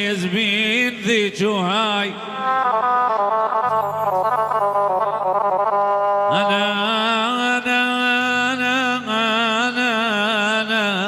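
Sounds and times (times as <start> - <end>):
instrumental folk melody: 2.4 - 6.6.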